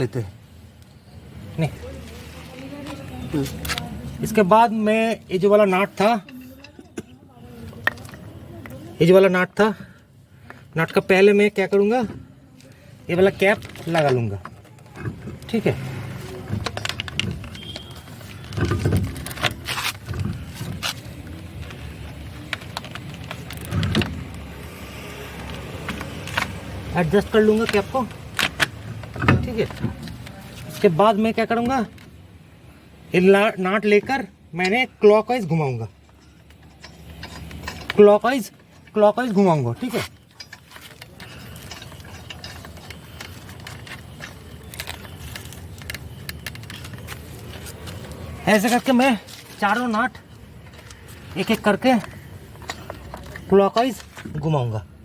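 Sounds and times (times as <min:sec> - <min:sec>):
metallic clicks and scrapes: 0:12.6 - 0:32.3, 0:35.9 - 0:54.4.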